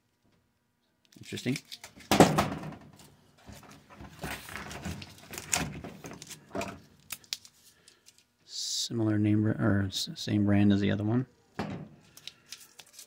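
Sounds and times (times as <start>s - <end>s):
tape scraping and rustling: 2.9s - 8.3s, 12.0s - 13.0s.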